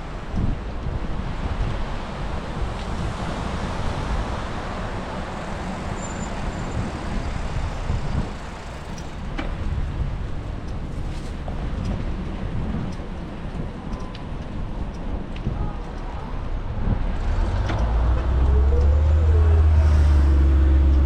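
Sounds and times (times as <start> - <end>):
city traffic: 0.0 - 21.0
wind rumbling on microphone: 0.0 - 21.0.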